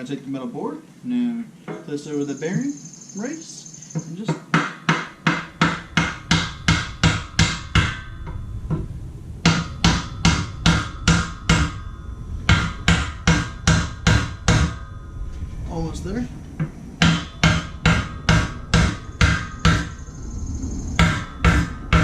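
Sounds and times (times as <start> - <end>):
hammer striking metal board: 4.3 - 8.4, 9.4 - 11.8, 12.5 - 14.9, 16.6 - 20.0, 21.0 - 22.0.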